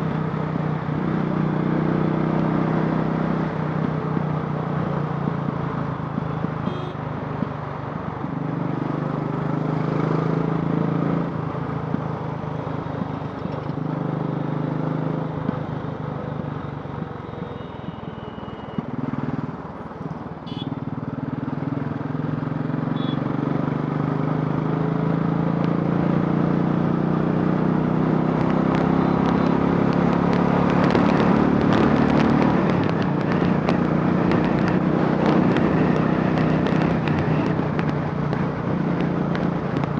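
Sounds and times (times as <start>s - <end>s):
motorcycle engine running: 20.6s - 39.9s.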